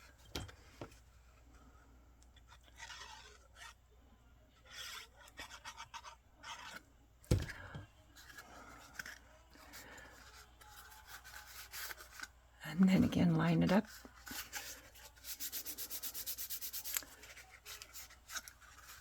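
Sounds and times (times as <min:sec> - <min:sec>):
cardstock rustling and rubbing: 0:08.2 - 0:12.4, 0:13.8 - 0:19.0.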